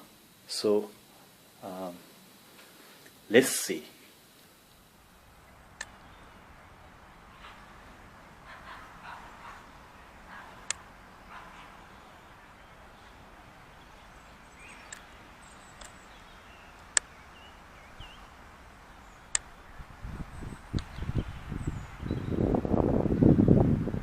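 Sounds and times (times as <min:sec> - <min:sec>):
sharp clicks: 0:05.8 - 0:06.0, 0:10.6 - 0:10.9, 0:14.7 - 0:15.1, 0:15.7 - 0:16.0, 0:16.8 - 0:17.1, 0:19.3 - 0:19.5
soft animal calls: 0:05.9 - 0:18.4.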